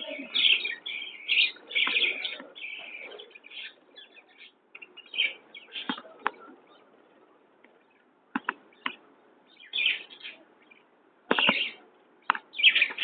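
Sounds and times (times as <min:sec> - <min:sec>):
budgerigars chattering and chirping: 0:00.0 - 0:13.0
sharp clicks: 0:08.3 - 0:09.0, 0:11.3 - 0:13.0.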